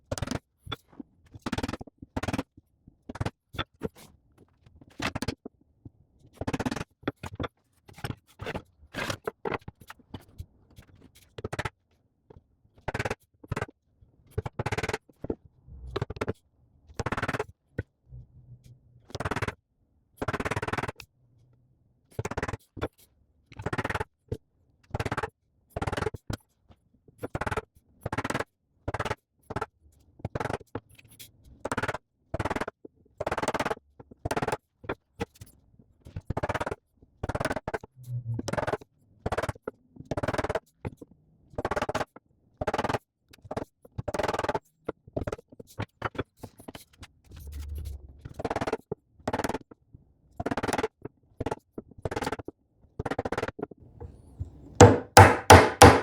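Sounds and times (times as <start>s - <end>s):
hand saw cutting wood: 54.8s - 56.0s.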